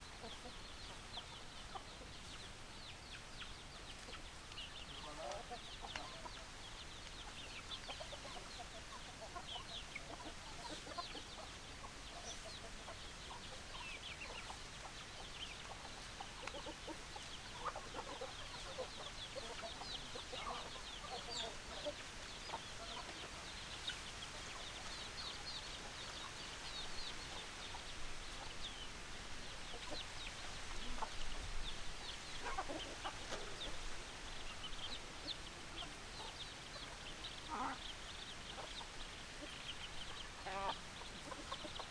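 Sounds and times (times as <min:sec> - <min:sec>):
chickens clucking: 0:00.1 - 0:41.9.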